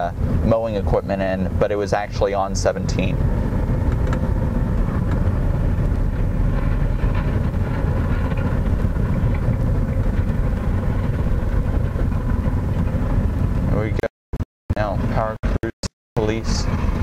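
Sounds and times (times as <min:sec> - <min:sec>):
car engine and road rumble: 0:00.0 - 0:17.0.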